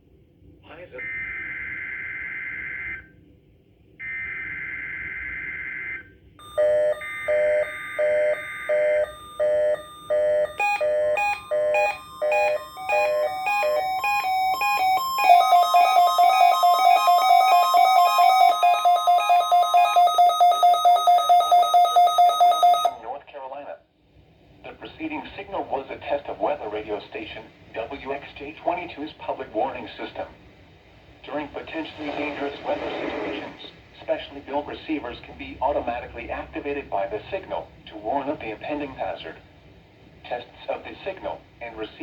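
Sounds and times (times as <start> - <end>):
electronic alert alarm beeps: 6.4 - 23.0.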